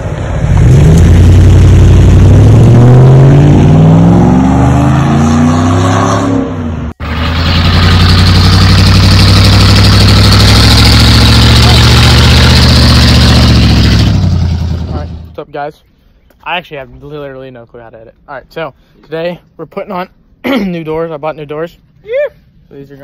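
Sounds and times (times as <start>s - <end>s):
car engine revving: 0.0s - 15.4s.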